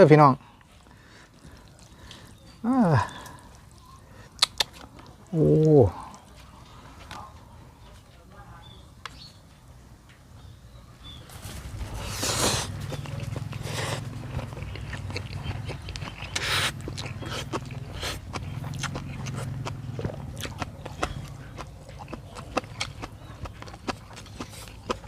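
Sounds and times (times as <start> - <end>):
wet chewing and lip smacking: 0.5 - 7.2, 11.8 - 25.0
slurping noodles: 11.9 - 19.5.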